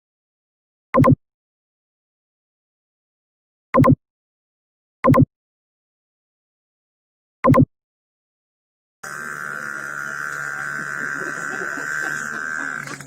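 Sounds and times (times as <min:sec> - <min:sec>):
boy imitating a generator: 0:09.0 - 0:13.0.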